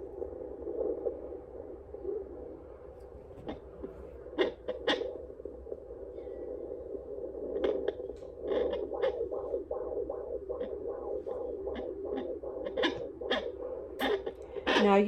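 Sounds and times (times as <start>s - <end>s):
pulsing whooshing womb sound: 0.0s - 15.0s
scratchy crackles of probe: 6.7s - 15.0s.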